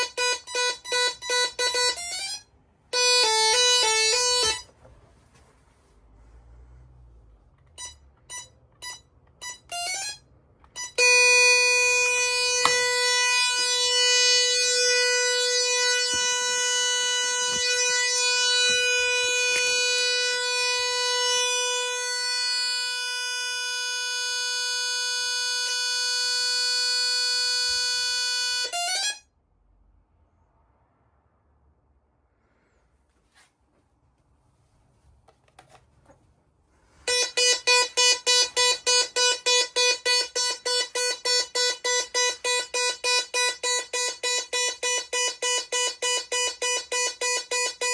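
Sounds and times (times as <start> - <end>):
alarm system beeping: 10.8 - 22.6, 37.1 - 47.9
shrill alarm tone: 10.8 - 29.2, 37.1 - 47.9.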